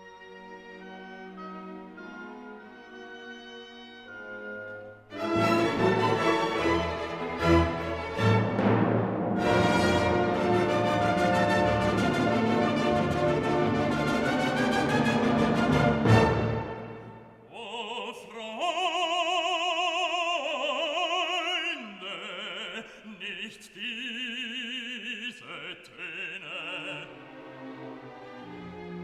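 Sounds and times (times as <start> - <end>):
orchestra playing: 0.0 - 17.5, 26.9 - 29.0
operatic voice singing: 17.4 - 27.4.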